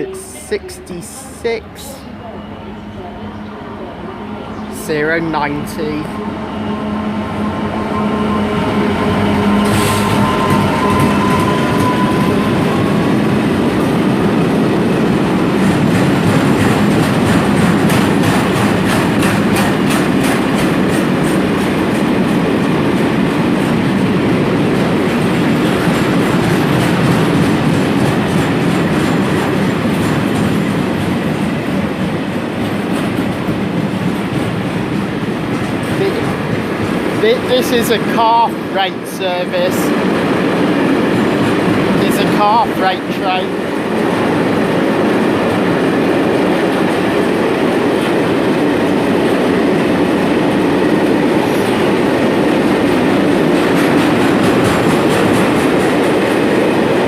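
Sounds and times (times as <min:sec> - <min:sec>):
diesel locomotive engine drone: 0:00.0 - 0:57.0
train wheels clicking over rail joints: 0:15.5 - 0:24.1, 0:24.7 - 0:37.2, 0:43.8 - 0:57.0.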